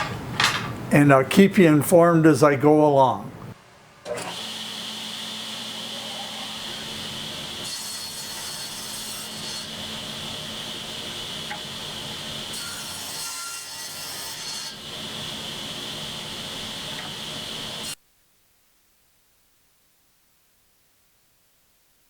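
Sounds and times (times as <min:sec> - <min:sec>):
saw cutting wood: 0:04.1 - 0:18.0.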